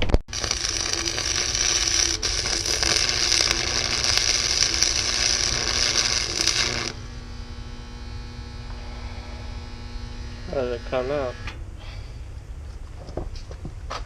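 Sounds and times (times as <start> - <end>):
welding arc crackling: 0.0 - 11.5
low electrical hum: 0.3 - 14.0.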